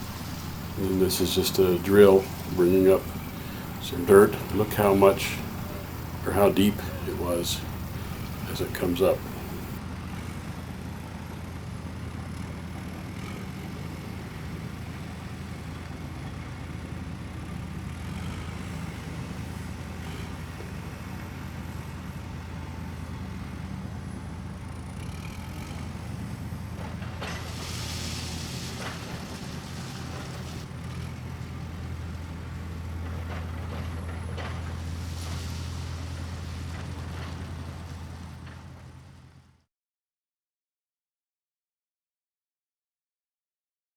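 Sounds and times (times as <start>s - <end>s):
hissing bursts: 0.0s - 9.8s
heavy machinery engine droning: 0.0s - 39.5s.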